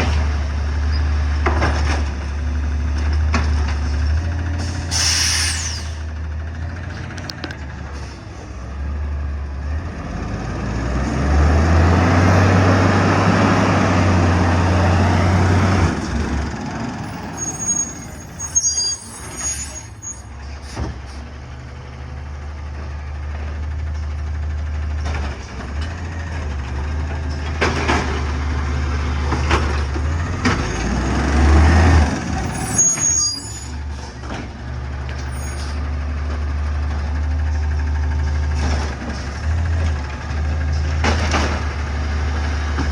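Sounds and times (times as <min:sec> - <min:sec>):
garbage truck diesel engine: 0:00.0 - 0:42.9
air brake hiss: 0:04.6 - 0:06.0
high squeal: 0:04.9 - 0:06.0, 0:17.0 - 0:20.3, 0:32.4 - 0:33.8, 0:35.2 - 0:35.8.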